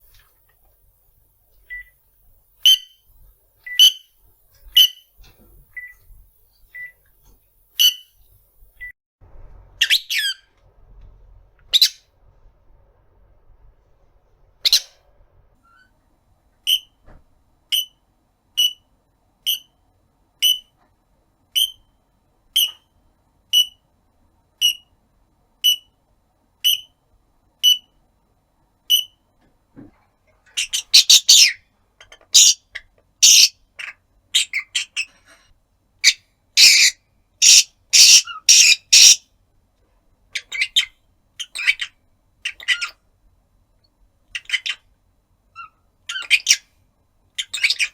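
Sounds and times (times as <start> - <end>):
parrot high calls: 9.8 - 10.5, 11.7 - 12.0, 30.6 - 31.6, 32.3 - 35.1, 36.0 - 39.2, 45.6 - 46.6
parrot squawking chatter: 32.3 - 35.1, 36.0 - 39.2.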